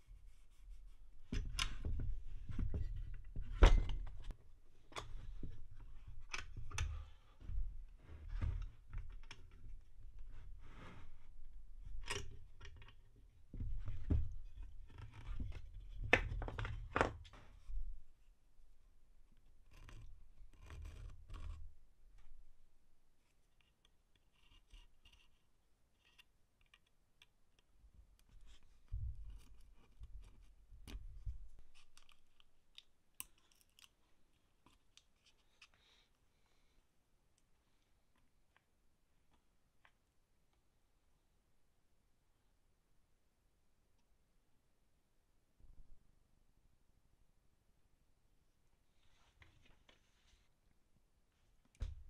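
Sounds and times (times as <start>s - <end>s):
clicks and scrapes of hand work: 19.4s - 21.8s, 23.2s - 36.1s.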